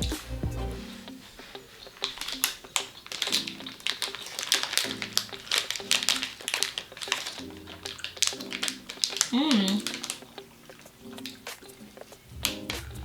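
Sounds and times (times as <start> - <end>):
background music with repeating notes: 0.0 - 13.0
plastic snack wrapper crinkling: 1.9 - 11.4.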